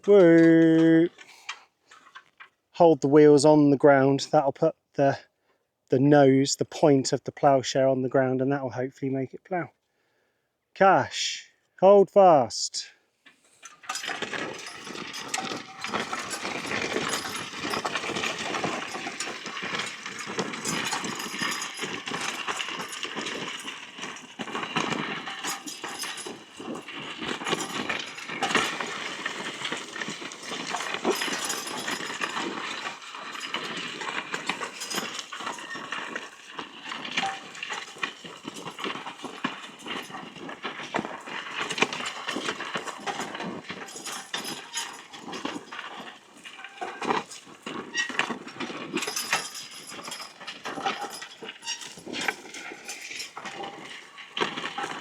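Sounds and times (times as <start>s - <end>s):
plough cutting soil crackle: 0.0s - 4.5s, 13.3s - 55.0s
hooves clopping: 13.2s - 55.0s
harness jingling: 13.6s - 55.0s.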